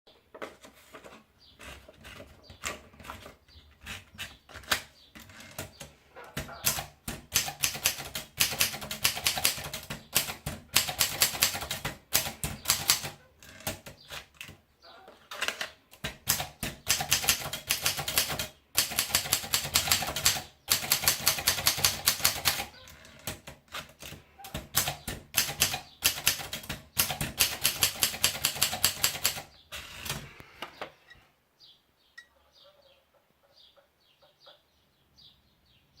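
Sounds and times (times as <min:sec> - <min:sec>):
typewriter keys clacking: 0:16.0 - 0:29.5.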